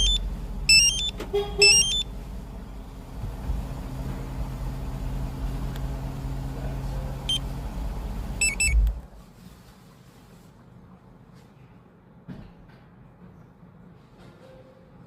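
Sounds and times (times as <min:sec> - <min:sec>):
car alarm beep: 0:00.0 - 0:02.1, 0:08.4 - 0:08.9
car alarm double chirp: 0:00.0 - 0:02.1, 0:08.4 - 0:08.8
car engine low rumble: 0:00.0 - 0:09.2.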